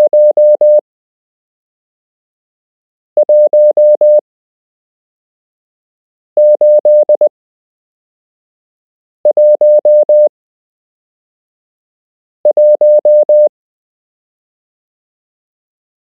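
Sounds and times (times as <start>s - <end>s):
morse code beeps: 0.0s - 0.8s, 3.2s - 4.2s, 6.4s - 7.3s, 9.3s - 10.3s, 12.5s - 13.5s.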